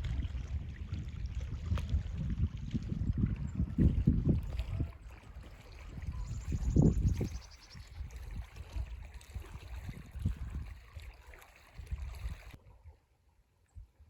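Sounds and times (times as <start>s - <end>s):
wind rumbling on microphone: 0.0s - 12.8s
small bird trilling: 6.1s - 7.9s.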